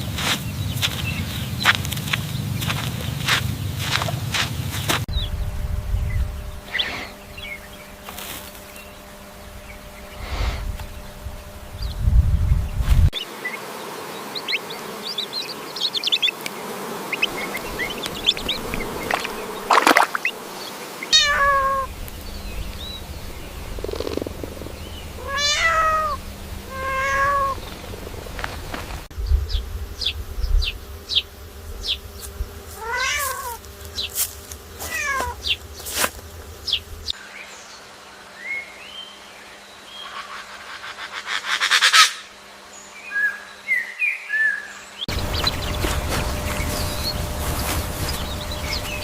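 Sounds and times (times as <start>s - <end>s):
short arching animal calls: 21.0s - 28.5s, 32.8s - 33.6s.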